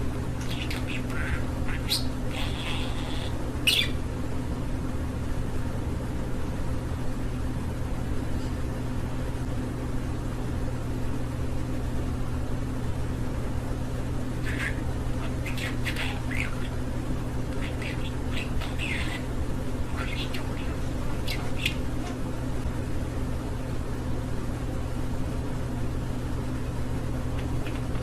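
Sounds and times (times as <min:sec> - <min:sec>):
low electrical hum: 0:00.0 - 0:28.0
budgerigar chirping: 0:00.4 - 0:04.0, 0:14.4 - 0:16.8, 0:17.5 - 0:19.3, 0:19.9 - 0:22.0.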